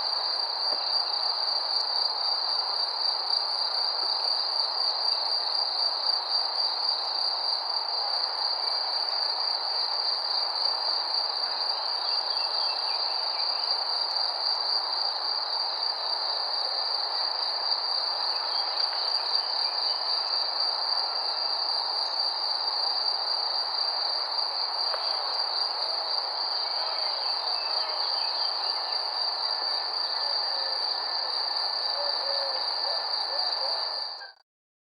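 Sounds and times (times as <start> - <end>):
crickets chirping: 0.0 - 34.4.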